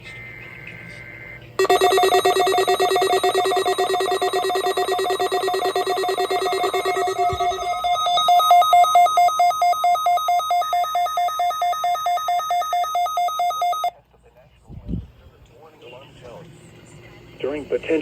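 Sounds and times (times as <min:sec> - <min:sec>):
rapidly pulsing electronic beep: 0:00.1 - 0:13.9
faint two-tone digital data burst: 0:01.6 - 0:07.8
two-pitch alternating beep: 0:01.6 - 0:13.9.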